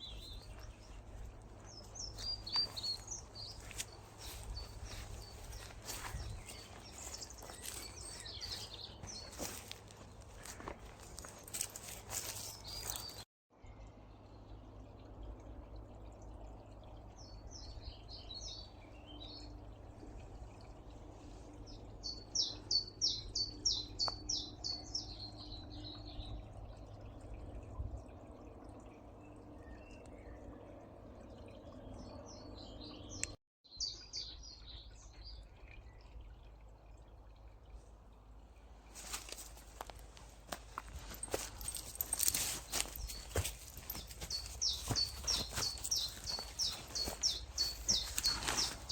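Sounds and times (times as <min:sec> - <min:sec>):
songbirds singing: 0:00.0 - 0:37.8, 0:38.6 - 0:48.9
rough scuffing noise: 0:01.7 - 0:13.2, 0:39.0 - 0:48.9
distant road traffic rumble: 0:36.2 - 0:48.9.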